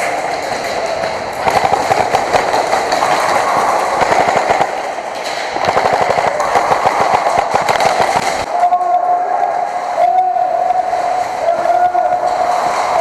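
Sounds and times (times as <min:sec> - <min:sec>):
airsoft gun automatic fire: 0:00.0 - 0:08.5.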